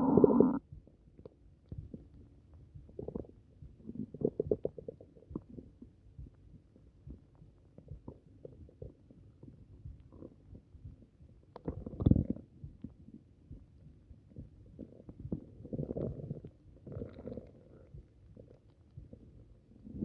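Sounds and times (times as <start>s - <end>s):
stomach growling: 0.0s - 0.6s, 2.9s - 5.7s, 11.5s - 12.9s, 14.3s - 20.0s
stomach gurgling and bubbly pops: 0.0s - 20.0s.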